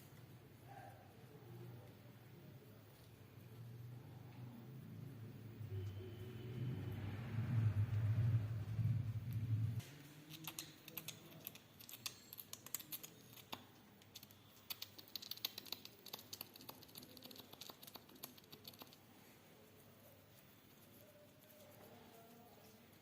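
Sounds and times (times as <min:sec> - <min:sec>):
low hum: 0:03.9 - 0:09.8.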